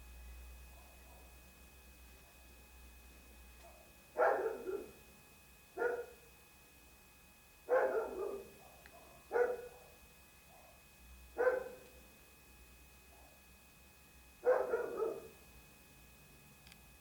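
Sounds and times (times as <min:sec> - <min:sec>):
dog barking: 0:00.7 - 0:01.4, 0:03.6 - 0:05.0, 0:05.8 - 0:06.3, 0:07.7 - 0:10.8, 0:11.4 - 0:12.0, 0:14.4 - 0:15.4.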